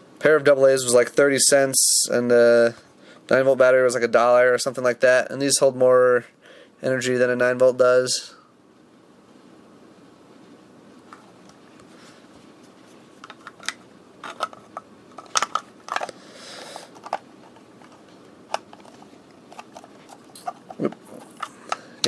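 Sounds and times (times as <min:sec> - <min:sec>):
plastic scraping: 0:16.9 - 0:21.8.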